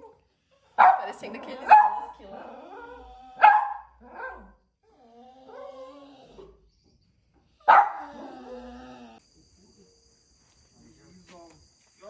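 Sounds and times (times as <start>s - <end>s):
dog yelping: 0.8s - 4.5s, 7.7s - 8.6s
dog whining howl: 4.0s - 6.6s, 7.7s - 9.2s.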